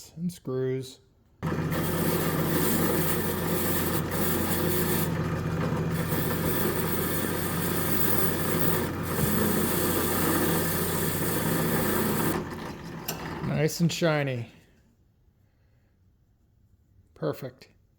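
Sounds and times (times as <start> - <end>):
bench grinder motor hum: 1.4 - 13.5.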